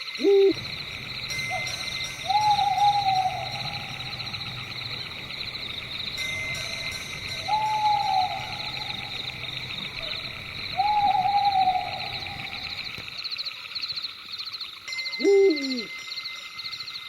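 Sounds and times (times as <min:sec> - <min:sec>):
owl hooting: 0:00.0 - 0:06.0, 0:07.2 - 0:13.0, 0:15.2 - 0:15.9
night insects trilling: 0:00.0 - 0:17.0.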